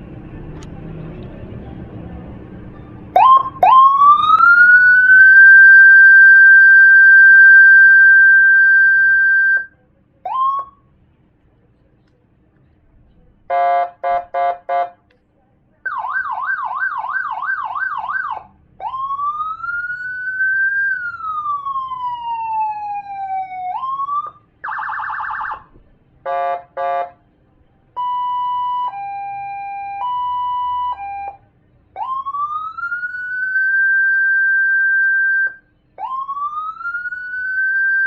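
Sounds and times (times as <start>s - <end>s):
electronic siren through horn speaker: 3.2s - 9.7s, 32.0s - 38.0s.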